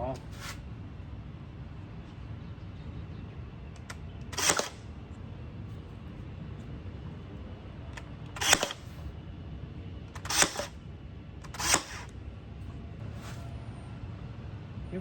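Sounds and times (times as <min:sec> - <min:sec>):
pin nailer firing: 0:04.3 - 0:04.8, 0:08.3 - 0:09.0, 0:10.2 - 0:10.8, 0:11.5 - 0:12.1.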